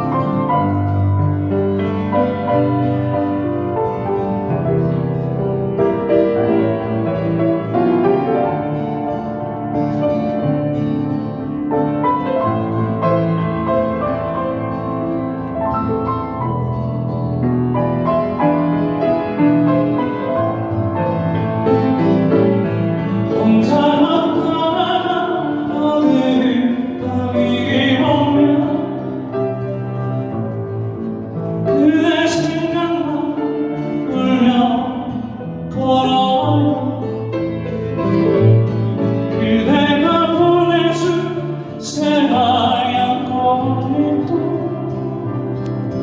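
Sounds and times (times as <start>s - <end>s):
piano accompaniment: 0.0s - 46.0s
person singing slow ballad: 23.0s - 30.1s, 31.6s - 46.0s.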